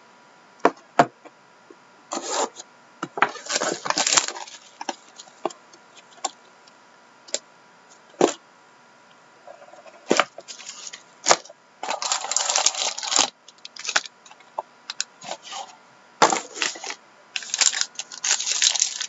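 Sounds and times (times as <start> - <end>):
packaging rustling: 3.2 - 5.4, 10.0 - 19.0.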